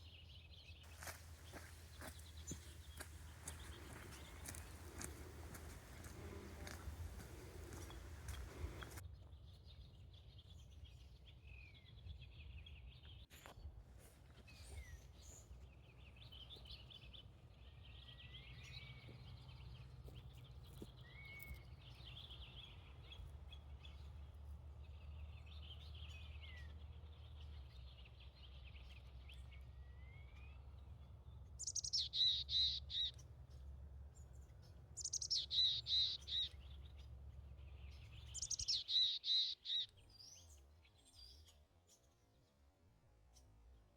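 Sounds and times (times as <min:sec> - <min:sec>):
harsh rapid bird calls: 0:31.6 - 0:33.2, 0:35.0 - 0:36.7, 0:38.1 - 0:39.9.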